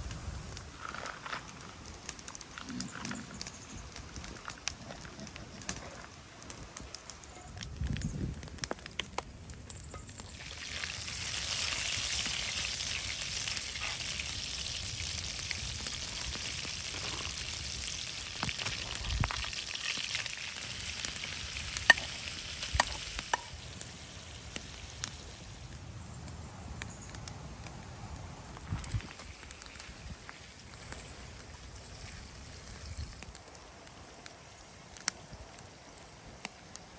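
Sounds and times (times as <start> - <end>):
food sizzling in a pan: 9.8 - 25.6.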